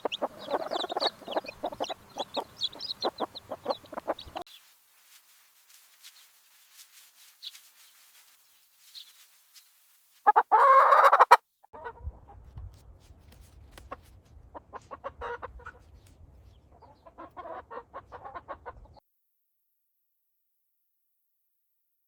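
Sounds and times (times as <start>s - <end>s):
chicken squawk: 0.0s - 4.4s, 10.2s - 12.4s, 14.5s - 16.0s, 16.7s - 19.0s
chickens clucking: 0.0s - 4.5s, 10.3s - 12.6s, 13.7s - 19.0s.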